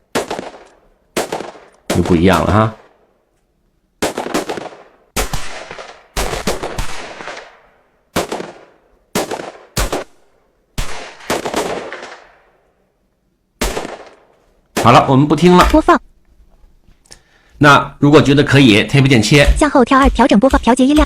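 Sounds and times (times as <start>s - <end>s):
gunfire bursts with echo: 0.1s - 3.0s, 4.0s - 12.6s, 13.6s - 15.1s.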